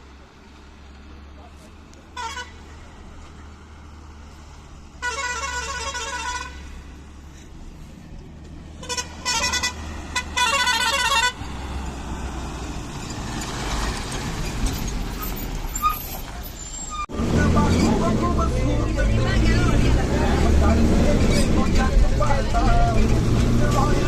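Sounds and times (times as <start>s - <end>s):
bus engine running: 0.0s - 24.0s
bus horn pulsing: 2.1s - 2.6s, 5.0s - 6.8s, 8.8s - 11.4s.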